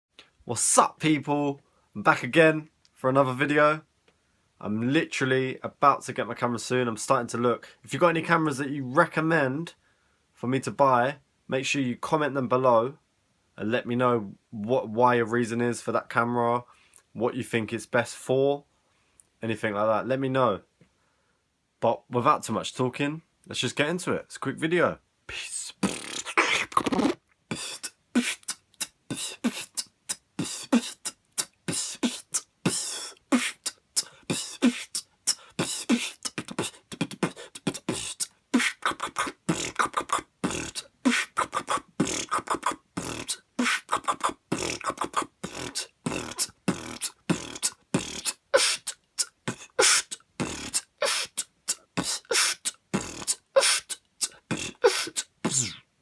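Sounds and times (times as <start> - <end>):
person beatboxing: 25.3 - 55.8.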